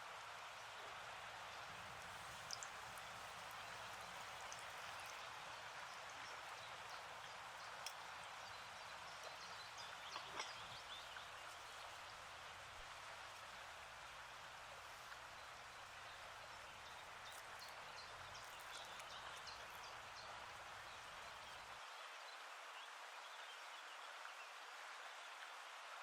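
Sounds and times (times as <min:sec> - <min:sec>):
food deep-frying in oil: 0:01.7 - 0:05.3.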